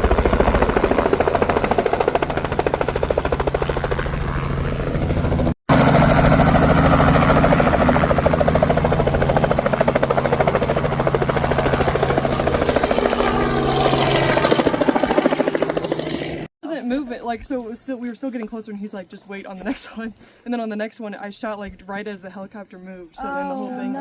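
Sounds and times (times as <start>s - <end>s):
helicopter rotor beating: 0.0s - 16.5s.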